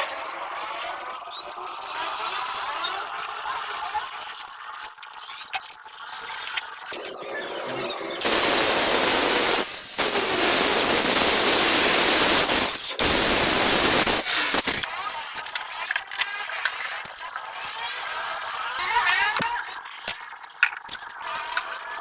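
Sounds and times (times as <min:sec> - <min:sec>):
power tool cutting wood: 0:08.2 - 0:14.8.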